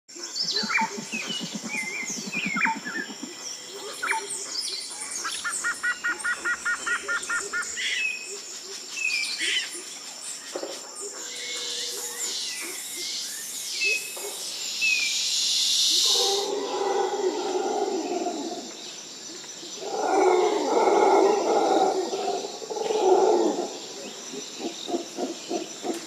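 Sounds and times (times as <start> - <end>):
birds calling and chirping: 0.2 - 26.0
low fast pulsing bird call: 0.4 - 4.3.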